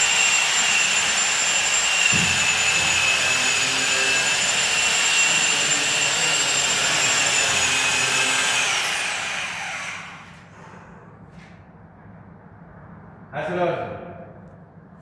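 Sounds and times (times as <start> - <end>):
power tool whine spinning down: 0.0 - 10.4.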